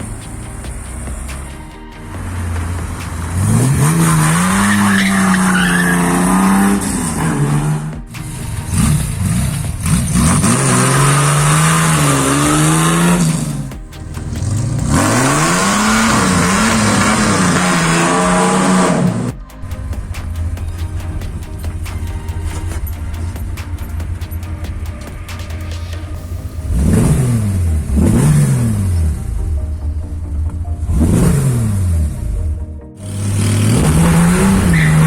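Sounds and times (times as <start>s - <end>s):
car engines revving: 0.0s - 29.8s, 33.0s - 35.0s.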